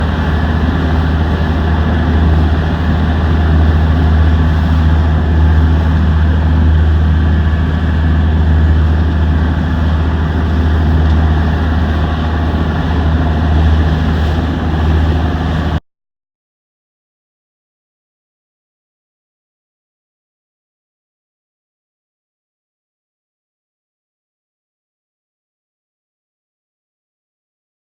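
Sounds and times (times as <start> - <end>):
boat engine droning: 0.0 - 15.8.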